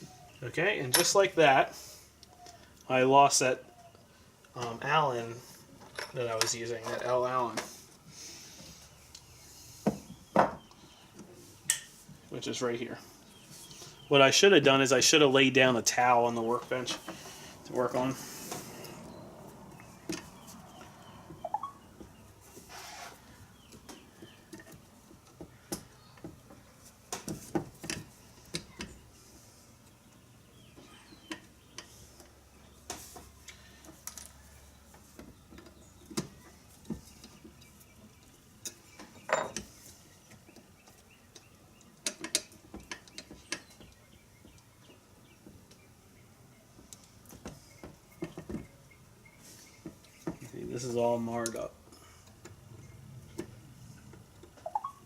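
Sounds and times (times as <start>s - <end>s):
small metal tools clinking: 39.3s - 39.7s.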